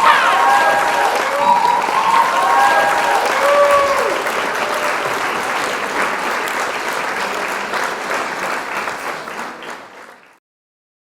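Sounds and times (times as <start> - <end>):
crowd applauding: 0.0 - 10.4.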